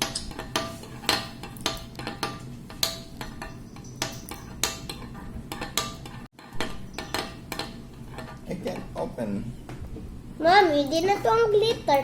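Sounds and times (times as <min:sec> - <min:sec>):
utensil scraping a bowl: 0:00.0 - 0:09.2.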